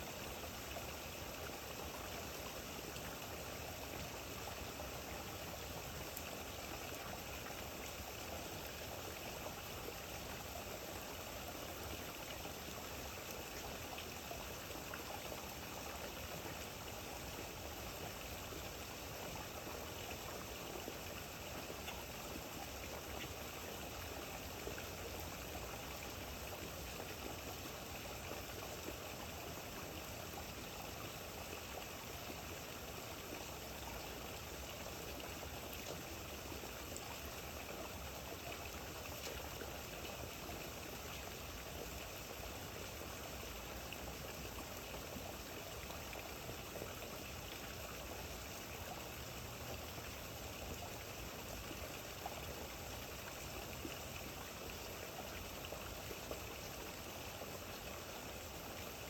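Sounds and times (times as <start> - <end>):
rain falling steadily: 0.0 - 59.0
faint drip ticks: 38.4 - 40.4.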